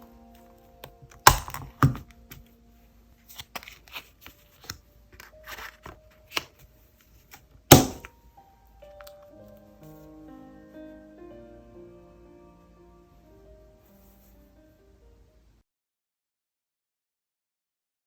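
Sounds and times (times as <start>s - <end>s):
faint background music: 0.0s - 15.6s
paper rustling and tearing: 3.2s - 7.5s
stationery knocking on a desk: 7.7s - 8.1s.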